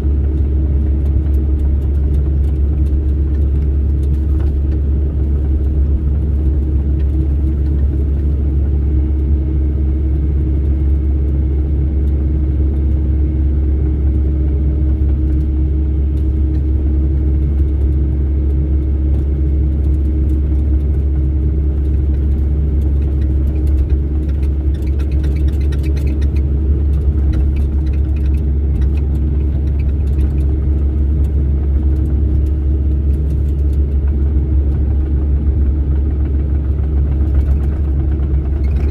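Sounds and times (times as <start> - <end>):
diesel engine rumbling: 0.0 - 38.9
faint rattle: 21.9 - 30.8, 37.3 - 38.9.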